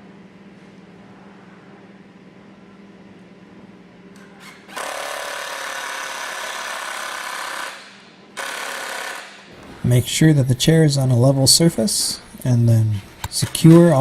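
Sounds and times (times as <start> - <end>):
power drill driving a screw: 4.7 - 9.4.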